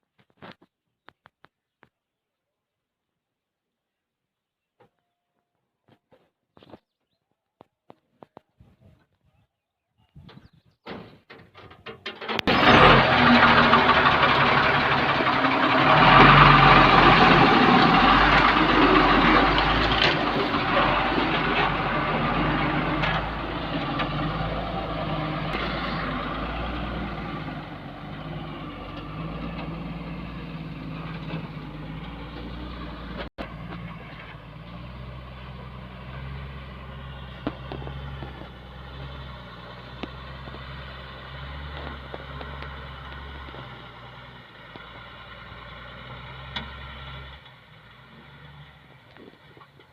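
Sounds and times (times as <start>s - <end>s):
heavy diesel engine running: 12.3s - 49.9s.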